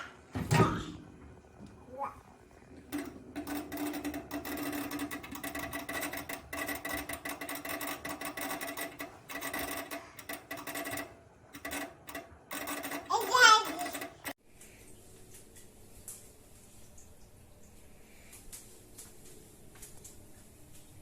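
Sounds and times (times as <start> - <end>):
microwave oven humming: 0.0 - 14.8.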